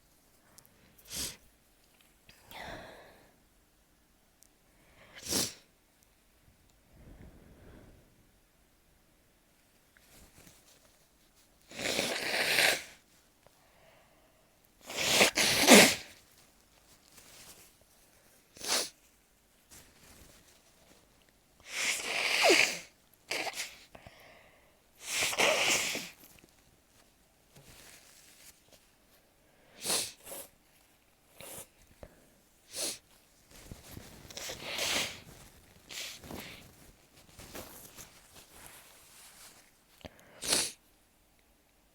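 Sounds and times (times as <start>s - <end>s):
person sneezing: 14.9s - 16.2s, 21.7s - 23.9s, 25.0s - 26.2s, 29.8s - 30.5s, 40.3s - 40.8s.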